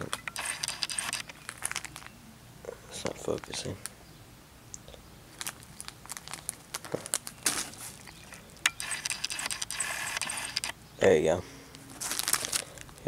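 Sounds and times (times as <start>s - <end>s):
plastic packaging crinkling: 0.0s - 2.1s, 5.3s - 10.7s, 11.9s - 13.0s.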